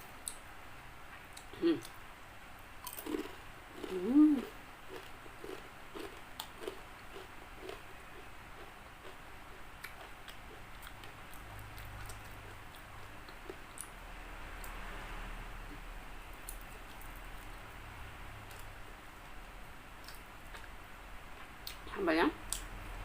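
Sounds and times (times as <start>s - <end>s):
person chewing crispy food: 2.8s - 13.9s.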